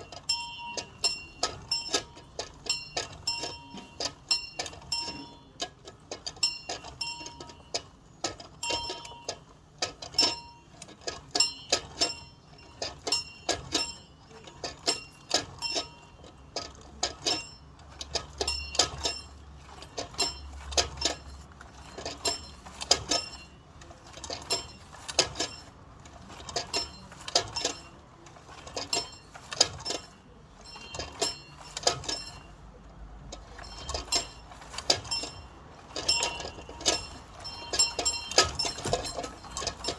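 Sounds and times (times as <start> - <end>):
bell clanging: 33.4 - 39.9.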